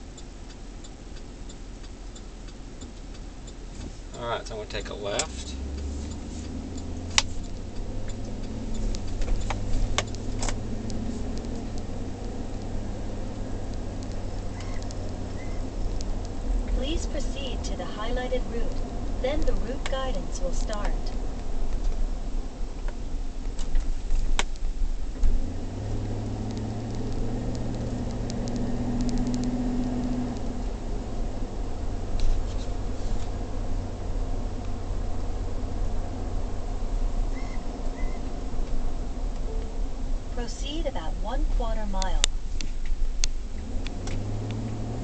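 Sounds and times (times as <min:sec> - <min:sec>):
road and engine hum: 0:00.0 - 0:45.0
sharp clicks: 0:00.1 - 0:17.8, 0:26.0 - 0:30.7.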